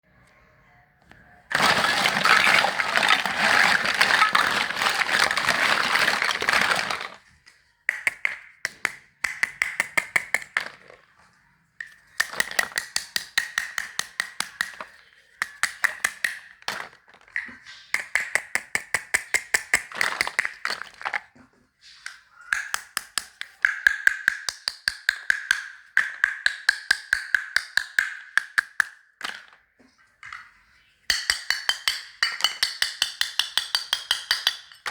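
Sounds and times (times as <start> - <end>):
plastic baby toy clicking: 7.9 - 11.0, 11.8 - 21.2, 22.0 - 29.6, 31.1 - 34.9.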